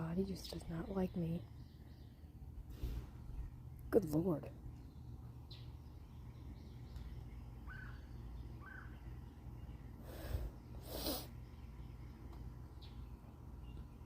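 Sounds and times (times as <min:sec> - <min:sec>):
low steady hum: 0:00.0 - 0:14.0
faint bird chirps: 0:04.8 - 0:14.0
heavy breathy exhales: 0:10.0 - 0:11.4.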